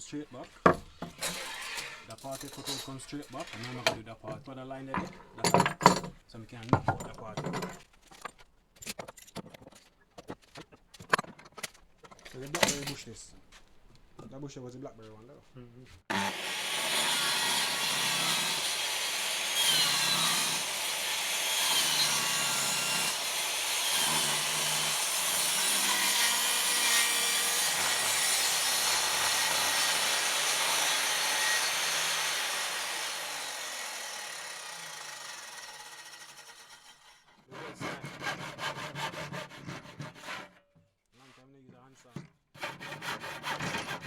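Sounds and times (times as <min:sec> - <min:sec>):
circular saw cutting wood: 0:00.7 - 0:05.2, 0:16.1 - 0:40.6, 0:42.6 - 0:44.0.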